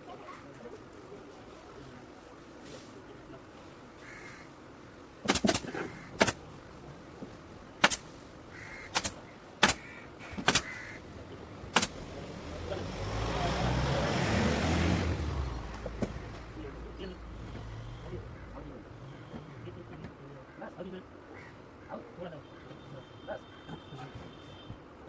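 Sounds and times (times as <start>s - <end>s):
sharp knocks: 5.2s - 6.4s, 8.9s - 10.7s
vehicle passing by: 11.4s - 19.8s.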